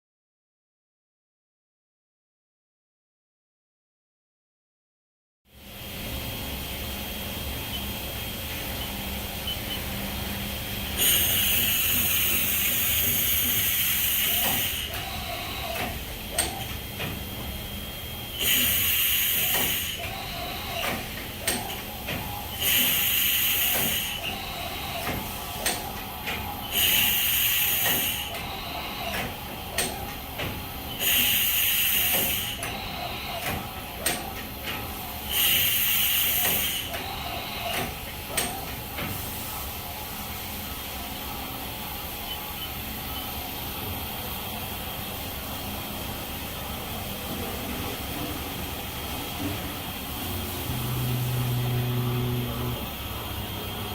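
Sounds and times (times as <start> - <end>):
compressed air hiss: 11.0 - 15.0, 18.4 - 20.0, 22.6 - 24.2, 26.7 - 28.3, 31.0 - 32.6, 35.3 - 36.9.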